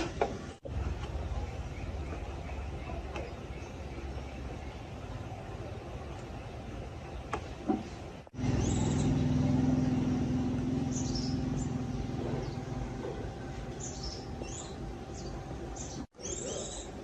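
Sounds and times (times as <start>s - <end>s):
birds chirping: 0.1s - 17.0s
small motorcycle engine idling: 8.3s - 16.0s.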